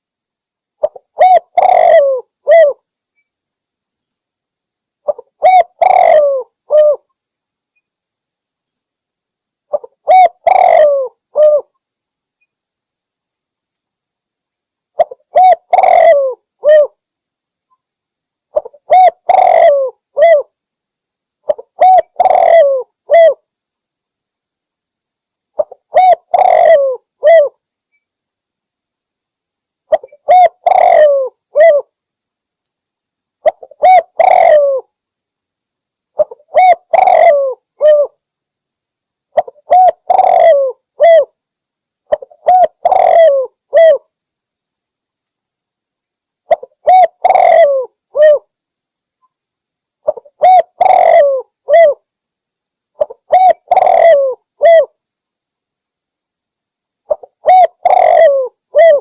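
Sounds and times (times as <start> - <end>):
dove cooing: 0.8 - 2.8, 5.1 - 7.0, 9.7 - 11.7, 15.0 - 17.0, 18.6 - 20.5, 21.5 - 23.4, 25.6 - 27.6, 29.9 - 31.9, 33.4 - 34.9, 36.2 - 38.2, 39.4 - 41.3, 42.1 - 44.0, 46.5 - 48.5, 50.0 - 52.0, 53.0 - 54.9, 57.1 - 59.0.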